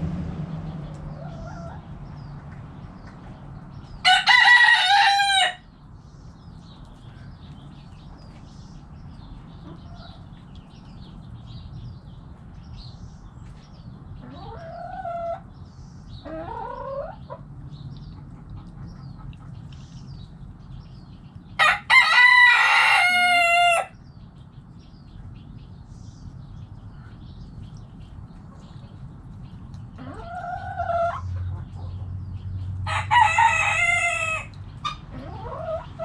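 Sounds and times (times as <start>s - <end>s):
rising chicken calls: 4.0s - 5.7s, 21.6s - 24.0s, 32.8s - 36.0s
rooster crowing: 4.0s - 5.7s, 21.6s - 24.0s, 32.8s - 34.6s.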